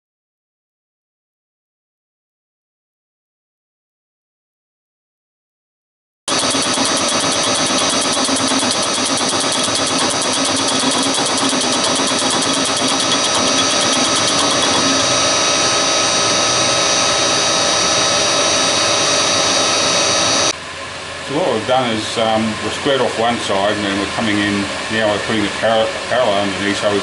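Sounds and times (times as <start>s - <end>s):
milling machine whining: 6.3s - 20.6s.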